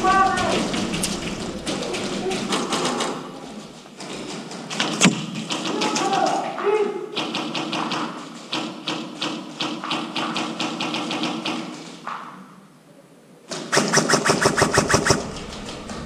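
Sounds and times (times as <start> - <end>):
airsoft gun shots: 4.8 - 5.8, 13.5 - 16.0.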